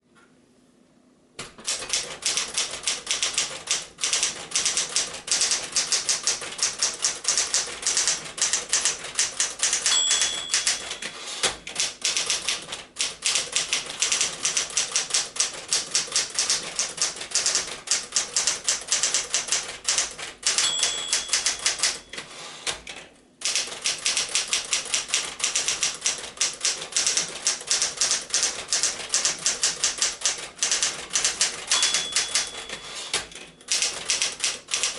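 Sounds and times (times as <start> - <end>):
typewriter keys clacking: 1.6 - 34.9
typewriter bell ding: 9.6 - 11.5, 20.5 - 22.3, 31.2 - 34.9.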